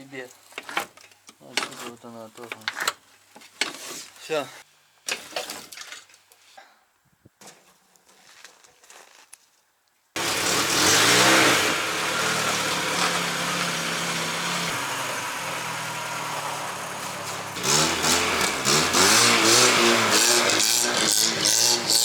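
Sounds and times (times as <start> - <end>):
car engine revving: 10.2 - 22.0.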